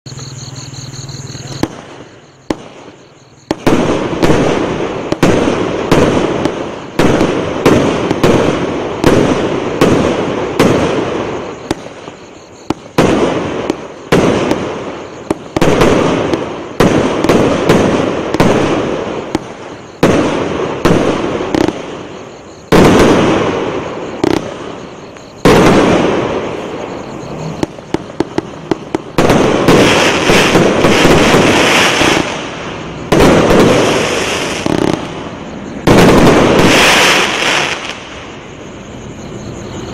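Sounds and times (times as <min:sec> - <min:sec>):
firework cake bangs: 0:22.7 - 0:24.7, 0:27.4 - 0:35.2
rapid crackling pops: 0:27.4 - 0:35.2.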